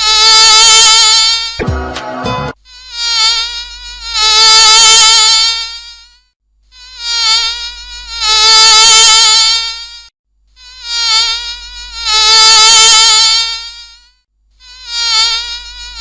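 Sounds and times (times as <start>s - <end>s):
bee buzzing: 6.8s - 10.0s, 10.6s - 16.0s.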